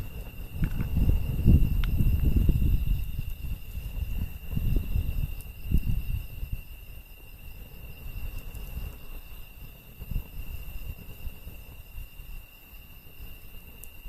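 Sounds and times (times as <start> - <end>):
campfire rumble: 0.0 - 14.0
fire crackles: 0.0 - 14.0
insects chirring: 0.0 - 14.0.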